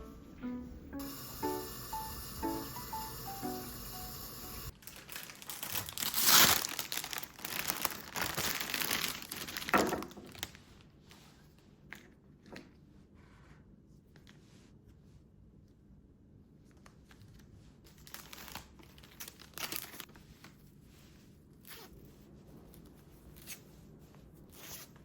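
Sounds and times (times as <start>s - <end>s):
crinkling and rustling: 4.7s - 12.8s, 16.6s - 20.8s.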